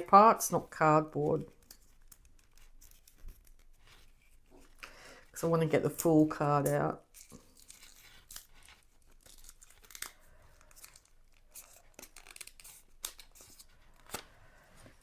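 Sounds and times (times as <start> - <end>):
paper crackles: 1.0 - 4.8, 7.0 - 15.0.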